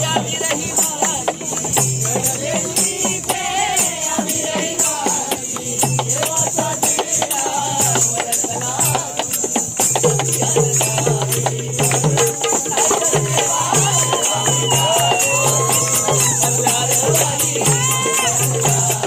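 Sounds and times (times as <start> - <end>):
fast drumming: 0.0 - 19.0
jingling percussion: 0.0 - 19.0
voices: 10.3 - 19.0.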